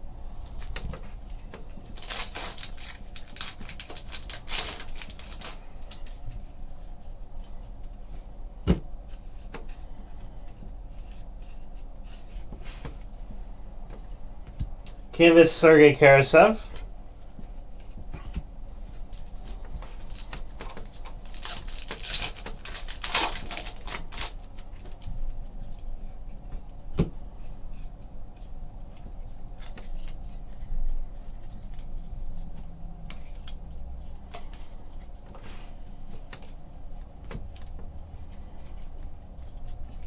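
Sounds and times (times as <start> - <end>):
cards rustling and sliding: 0.5 - 6.2.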